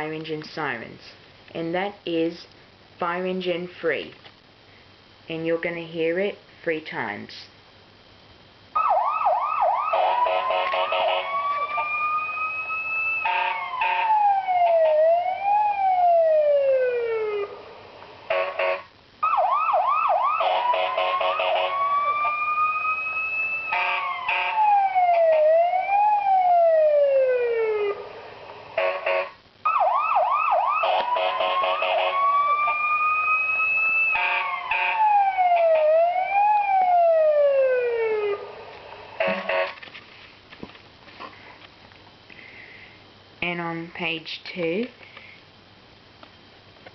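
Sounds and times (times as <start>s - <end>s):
fire engine siren ringtone: 8.8s - 38.6s, 39.2s - 39.8s.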